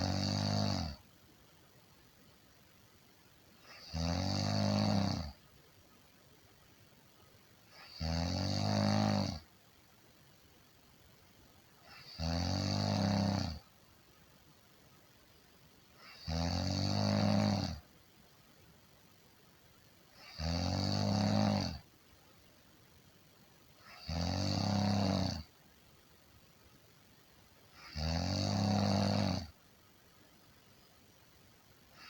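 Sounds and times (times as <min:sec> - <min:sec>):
person snoring: 0:00.0 - 0:01.0, 0:03.6 - 0:05.4, 0:07.7 - 0:09.4, 0:11.8 - 0:13.6, 0:16.0 - 0:17.8, 0:20.2 - 0:21.8, 0:23.8 - 0:25.5, 0:27.8 - 0:29.5.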